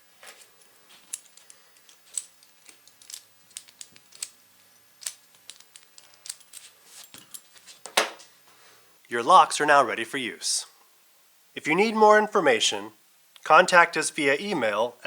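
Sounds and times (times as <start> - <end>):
lock parts clicking and tapping: 1.0 - 4.4, 5.0 - 8.2.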